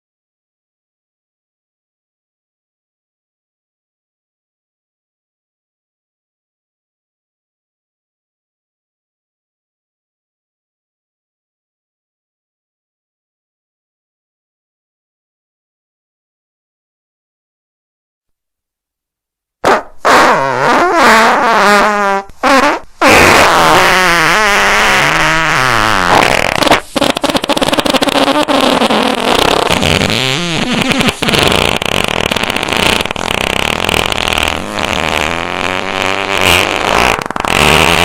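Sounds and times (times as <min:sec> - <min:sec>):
farting: 0:19.6 - 0:38.0.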